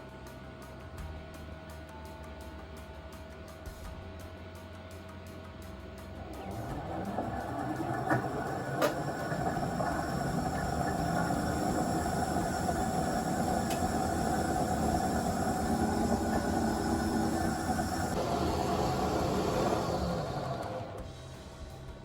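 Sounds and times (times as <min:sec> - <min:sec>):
washer-dryer mechanical din: 0:06.0 - 0:22.0.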